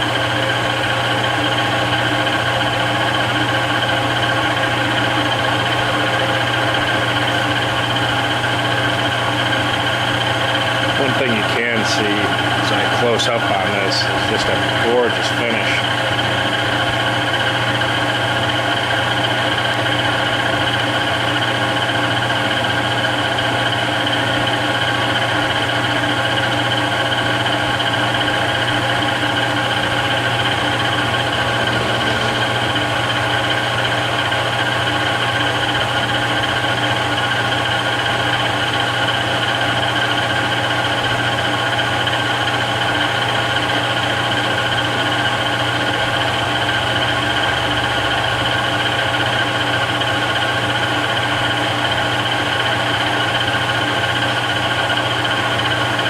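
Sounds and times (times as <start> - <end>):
steady gear whine: 0.0 - 22.9, 23.6 - 39.5
lathe motor humming: 0.0 - 56.0.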